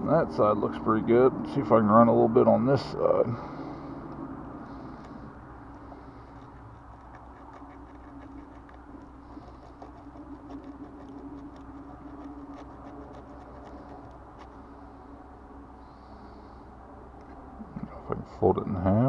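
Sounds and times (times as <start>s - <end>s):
steady low hum: 0.0s - 19.0s
emery cloth scratching metal: 6.2s - 14.6s.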